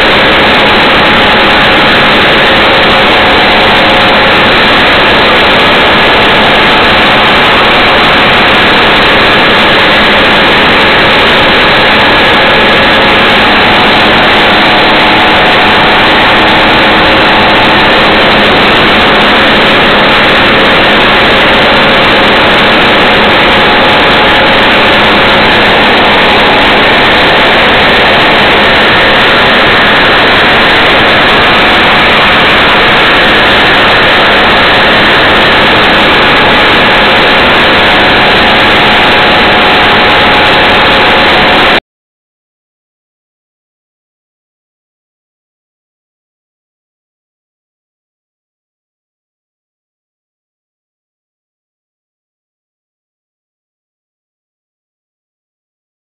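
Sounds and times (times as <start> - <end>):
combine harvester running: 0.0 - 41.8.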